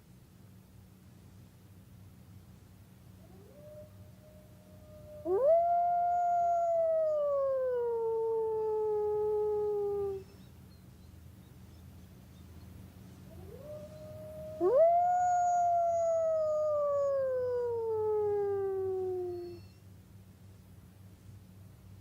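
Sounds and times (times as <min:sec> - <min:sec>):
wolf howling: 0:03.3 - 0:10.2, 0:13.3 - 0:19.7.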